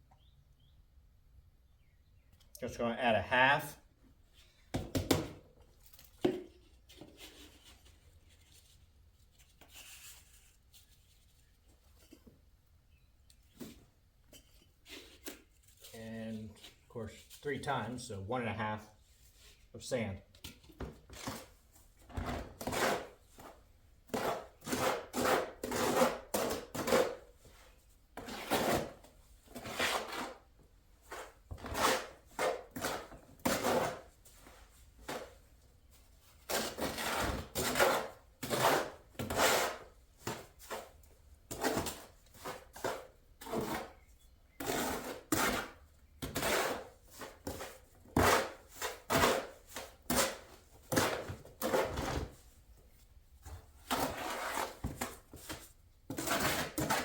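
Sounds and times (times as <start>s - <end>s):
tool scraping through mortar mix: 22.2s - 35.4s, 36.0s - 52.4s, 53.6s - 57.0s.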